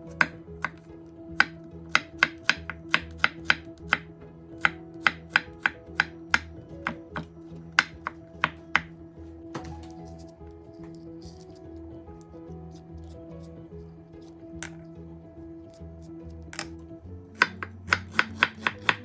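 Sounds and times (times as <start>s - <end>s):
background music: 0.0s - 19.0s
knife chopping on cutting board: 0.2s - 0.8s, 1.4s - 4.0s, 4.6s - 8.9s, 17.4s - 19.0s.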